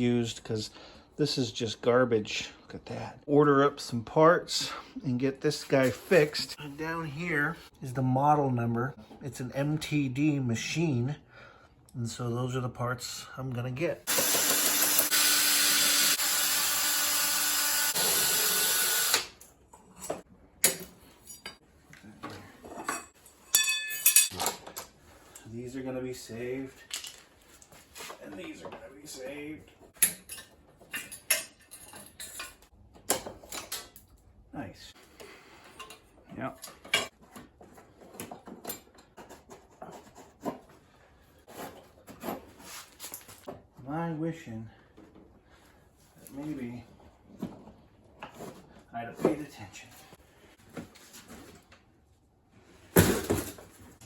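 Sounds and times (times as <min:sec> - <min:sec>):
power drill running: 0:14.1 - 0:19.3.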